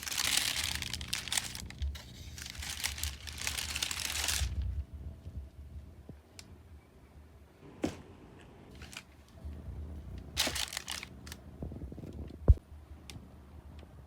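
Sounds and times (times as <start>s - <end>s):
box clicks and rustles: 0.0s - 4.6s, 10.4s - 11.2s
packaging crinkling: 0.0s - 4.7s, 8.7s - 9.2s, 10.4s - 11.4s.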